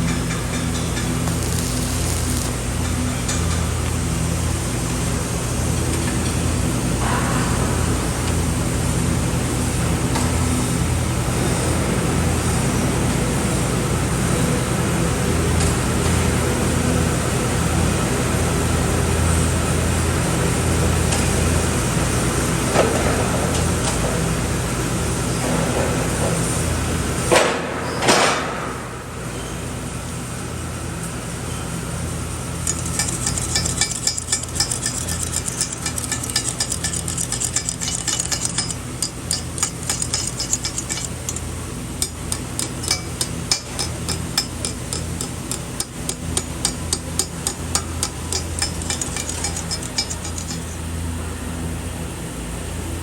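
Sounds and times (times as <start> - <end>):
welding arc crackling: 0.0 - 4.0, 32.4 - 50.8
electrical hum of arc welder: 0.0 - 53.0
sharp metallic knocks: 32.7 - 50.7.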